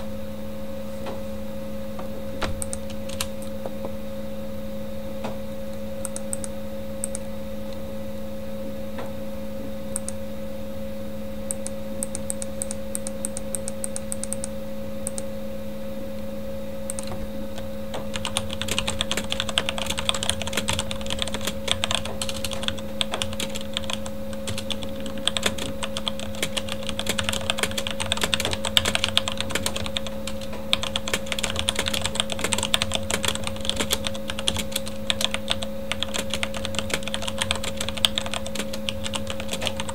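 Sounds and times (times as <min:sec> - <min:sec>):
computer fan hum: 0:00.0 - 0:39.9
typing on mechanical keyboard: 0:02.6 - 0:03.4, 0:16.9 - 0:17.2, 0:18.0 - 0:39.9.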